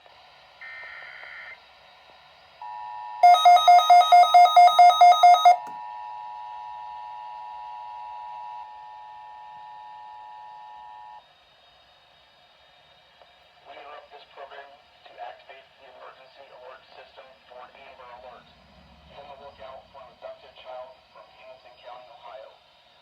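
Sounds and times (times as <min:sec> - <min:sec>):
rapid beeps: 0:03.2 - 0:05.7.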